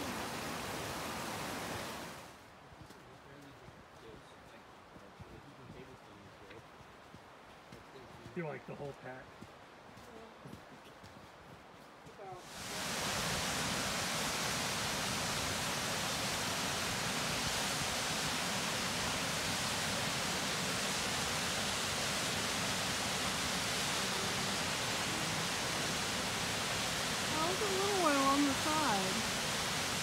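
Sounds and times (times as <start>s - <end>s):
rushing water: 0.0s - 10.8s, 11.8s - 30.0s.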